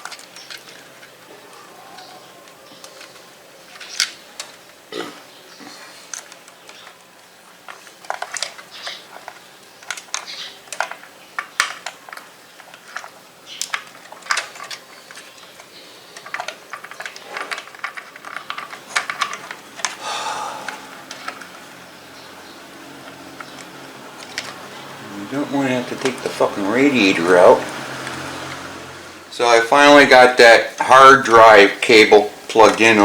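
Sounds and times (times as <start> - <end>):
plastic clicks and rattles: 0.0 - 1.2, 2.0 - 4.8, 6.1 - 20.0, 21.0 - 21.7, 23.0 - 25.0.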